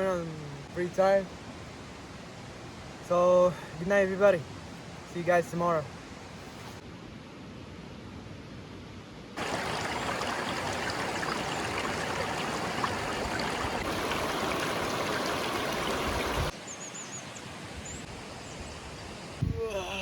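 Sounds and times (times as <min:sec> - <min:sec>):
river water rushing: 0:09.4 - 0:18.4.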